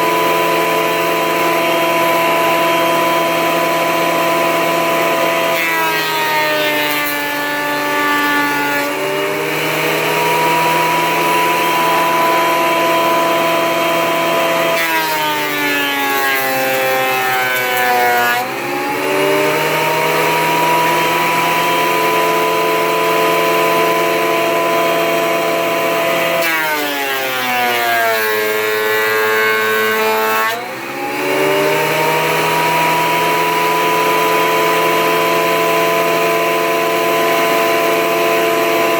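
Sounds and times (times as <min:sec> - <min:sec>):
planer motor whining: 0:00.0 - 0:38.9.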